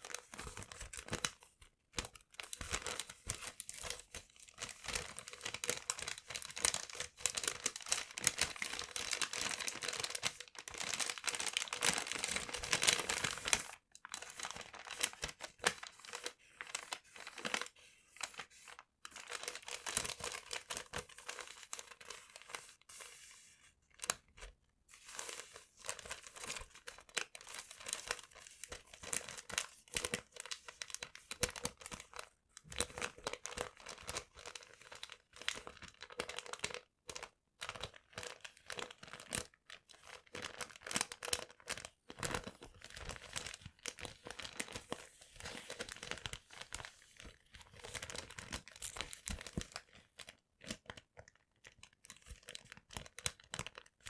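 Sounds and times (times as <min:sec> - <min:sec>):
paper crumpling: 0:40.0 - 0:50.0.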